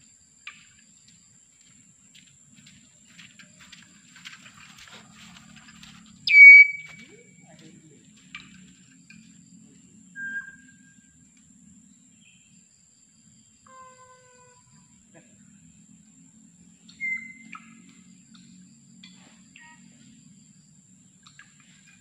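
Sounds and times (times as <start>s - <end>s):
bird whistling calls: 6.3s - 7.1s, 10.2s - 10.9s, 16.9s - 17.9s.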